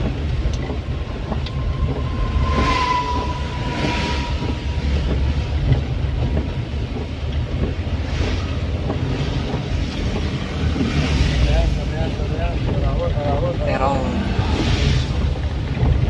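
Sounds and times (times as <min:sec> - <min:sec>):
engine and road rumble: 0:00.0 - 0:16.0
faint whistling tone: 0:01.1 - 0:05.6.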